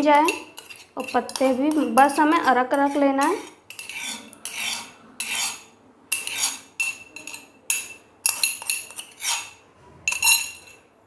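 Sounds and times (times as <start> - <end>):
metal utensils scraping sieve: 0.0 - 10.8.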